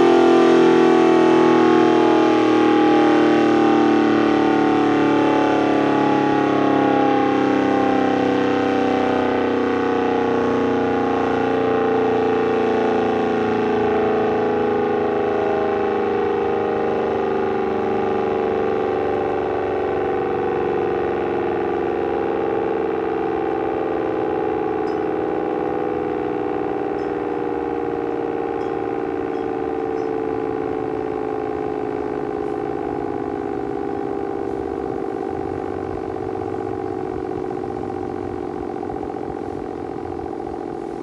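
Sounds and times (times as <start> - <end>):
warning siren steady falling tone: 0.0 - 41.0.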